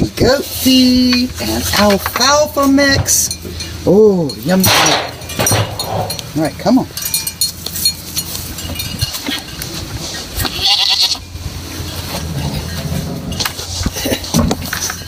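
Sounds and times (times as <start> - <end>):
knocks of containers: 4.6 - 6.3
rustle of feed: 7.7 - 15.0
goats bleating: 10.4 - 11.4.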